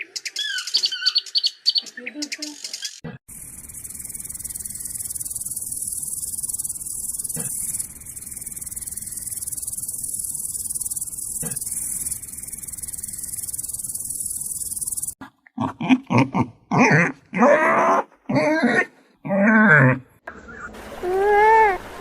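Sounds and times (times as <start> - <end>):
insects trilling: 3.3 - 15.2.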